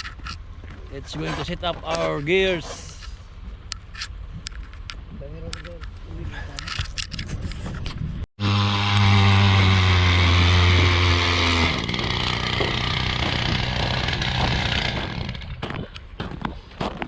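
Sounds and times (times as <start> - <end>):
power ice auger drilling: 8.4 - 15.6.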